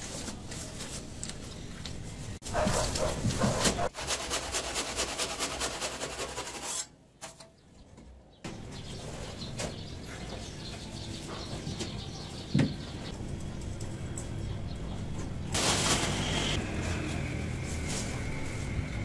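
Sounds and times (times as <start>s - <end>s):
rapid rubbing and scraping strokes: 2.7s - 6.9s.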